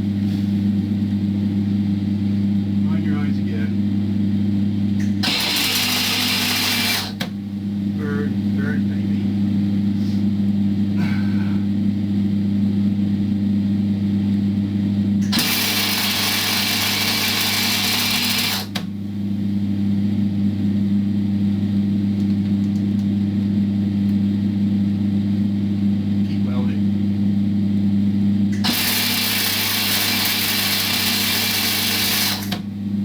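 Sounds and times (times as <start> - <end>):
electric welder humming: 4.8 - 10.8, 15.1 - 19.1, 28.5 - 32.8.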